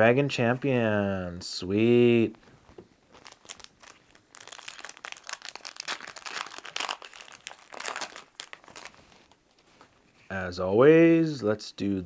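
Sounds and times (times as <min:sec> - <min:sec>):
foil wrapper crinkling: 0:03.1 - 0:09.8.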